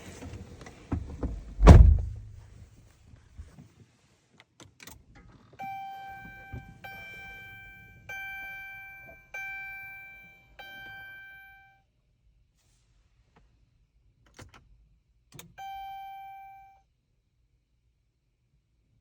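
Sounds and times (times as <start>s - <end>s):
car warning chime: 5.6s - 11.8s, 15.6s - 16.8s.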